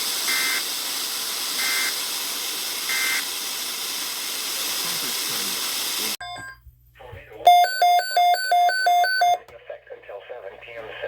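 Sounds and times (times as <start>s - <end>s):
radio hiss: 0.0s - 6.2s, 9.5s - 11.0s
two-tone data bursts: 1.6s - 1.9s, 2.9s - 3.2s.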